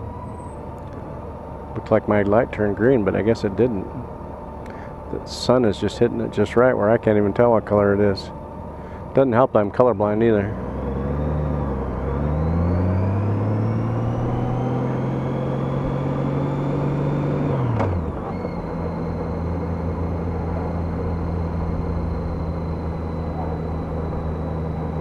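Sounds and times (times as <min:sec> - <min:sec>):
motorcycle engine accelerating: 0:10.1 - 0:25.0.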